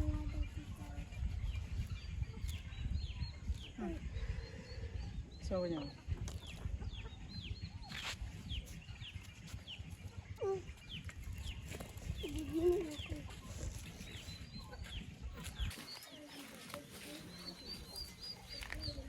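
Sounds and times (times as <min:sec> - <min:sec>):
chicks peeping: 0:00.0 - 0:19.0.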